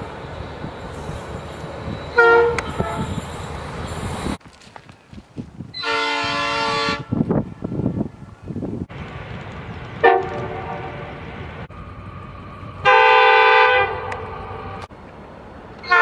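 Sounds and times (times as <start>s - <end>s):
train rumble: 0.0s - 4.5s, 5.8s - 16.0s
train horn: 2.1s - 3.4s, 5.8s - 8.0s, 10.0s - 11.2s, 12.8s - 14.9s.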